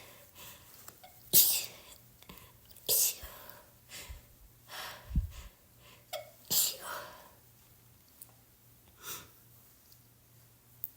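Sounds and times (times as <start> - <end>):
person sneezing: 1.3 - 1.8, 6.2 - 7.1.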